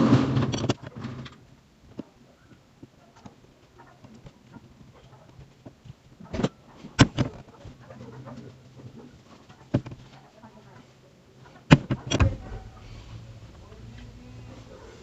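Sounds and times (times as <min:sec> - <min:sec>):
sharp knocks: 0:11.7 - 0:13.4
rustling scrape: 0:12.0 - 0:15.0.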